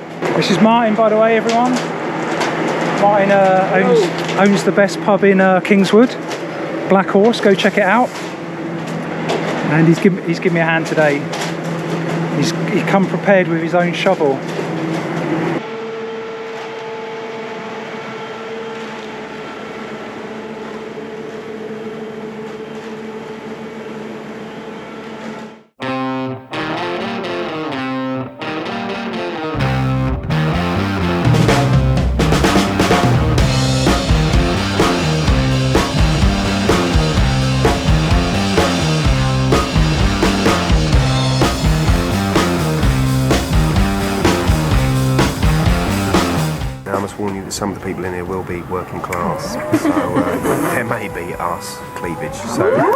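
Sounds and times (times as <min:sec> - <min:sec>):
instrumental rock music: 0:25.8 - 0:46.9
concrete mixer lorry humming: 0:29.6 - 0:46.9.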